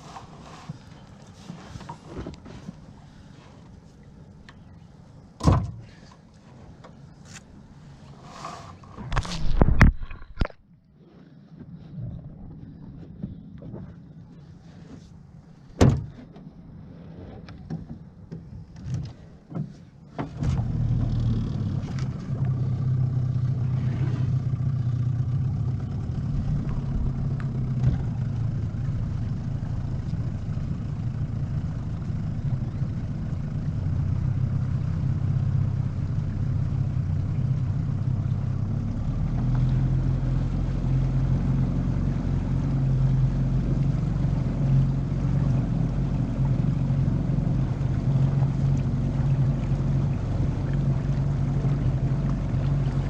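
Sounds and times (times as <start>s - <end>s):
outboard motor droning: 0.0s - 53.0s
knocks on a boat: 5.4s - 5.8s, 15.8s - 16.2s.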